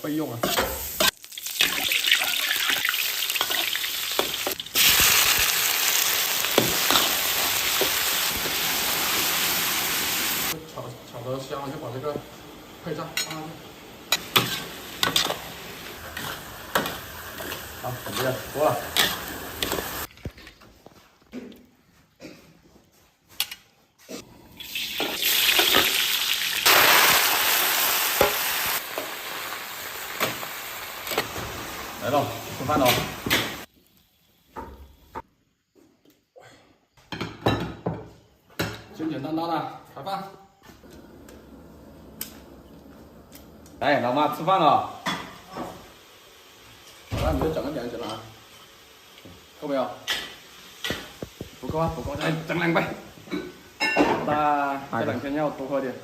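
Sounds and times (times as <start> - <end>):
food sizzling in hot oil: 0.0 - 20.1, 24.5 - 34.0, 43.9 - 56.0.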